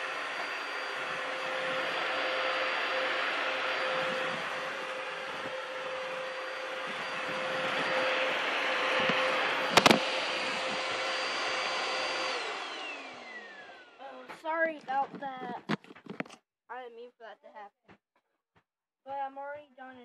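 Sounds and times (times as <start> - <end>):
vacuum motor whine: 0.0 - 14.4.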